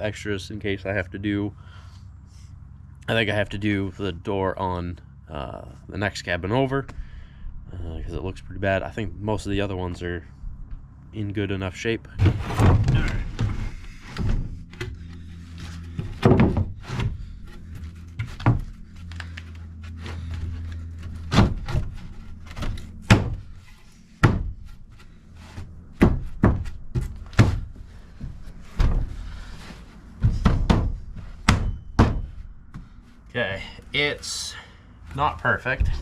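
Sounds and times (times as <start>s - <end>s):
low steady hum: 0.0s - 36.0s
wooden thunks and knocks: 12.2s - 19.0s, 20.0s - 33.0s.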